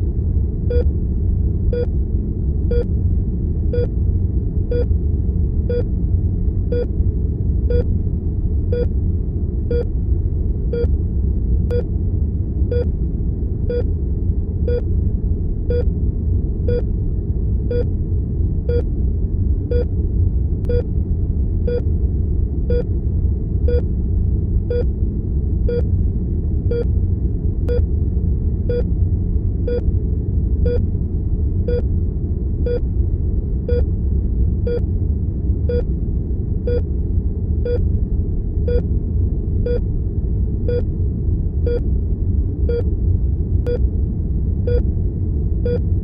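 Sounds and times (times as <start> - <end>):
low room rumble: 0.0 - 46.0
heart monitor beeping: 10.7 - 10.9, 25.7 - 25.9, 28.7 - 28.9, 33.7 - 33.9, 35.7 - 35.9, 37.6 - 37.8, 40.7 - 40.9, 42.7 - 42.9, 45.6 - 45.8.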